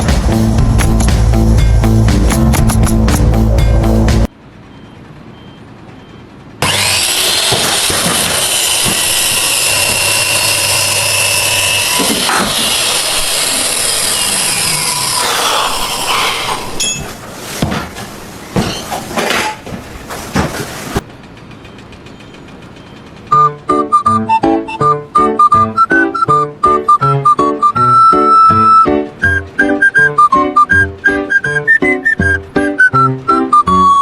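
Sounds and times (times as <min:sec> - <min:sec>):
power tool cutting: 0:06.6 - 0:16.8.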